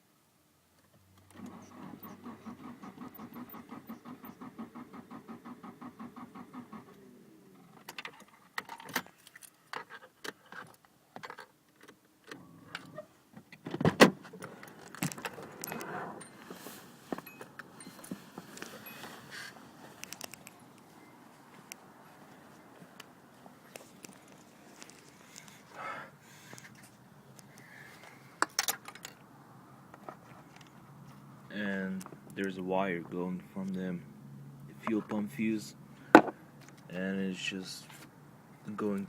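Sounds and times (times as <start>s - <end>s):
engine cranking on starter: 1.3s - 7.5s
clicks and rattling: 19.4s - 20.9s, 28.4s - 29.2s.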